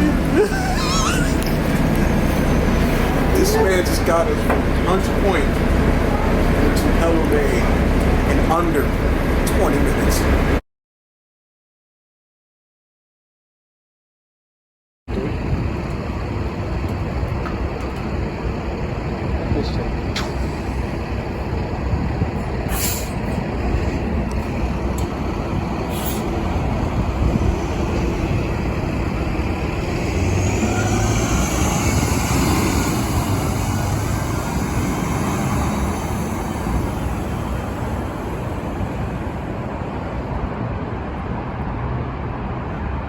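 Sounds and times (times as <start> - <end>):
bus diesel engine running: 0.0 - 10.6, 15.1 - 43.0
turbocharger whine: 0.0 - 10.6, 15.1 - 40.5
short air hisses: 22.7 - 23.2, 25.9 - 26.3.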